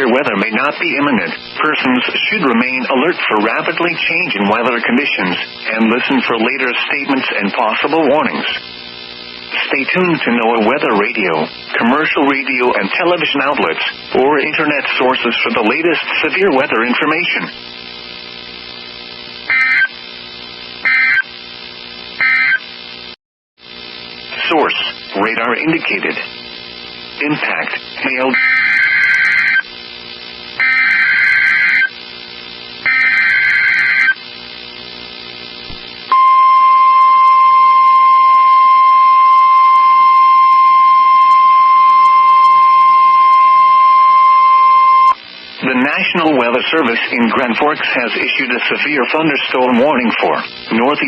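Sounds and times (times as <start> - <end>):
radio hiss and hum: 0.0 - 51.0
steady high alarm beep: 19.5 - 19.9, 20.9 - 21.2, 22.2 - 22.6, 28.4 - 29.6, 30.6 - 31.9, 32.9 - 34.2, 36.1 - 45.2
harsh digital data bursts: 19.5 - 20.0, 20.8 - 21.3, 22.2 - 22.8, 27.2 - 29.7, 30.6 - 32.0, 32.8 - 34.2.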